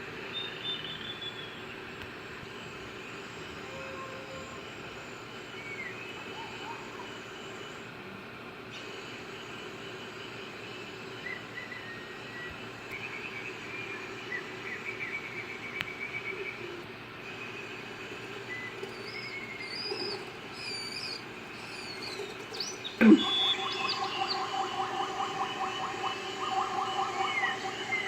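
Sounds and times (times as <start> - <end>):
birds chirping and whistling: 0.3 - 1.8, 11.2 - 16.6, 18.2 - 28.0
fast rhythmic chattering call: 18.8 - 28.0.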